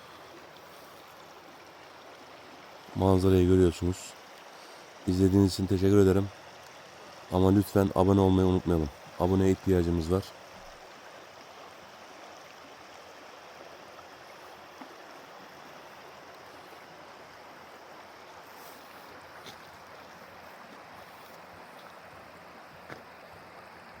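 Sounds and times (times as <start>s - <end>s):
stream water rushing: 0.0s - 24.0s.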